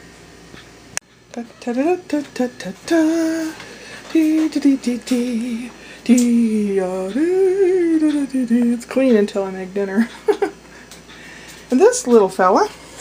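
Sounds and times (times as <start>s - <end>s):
woman singing wordless tune: 1.3s - 10.2s.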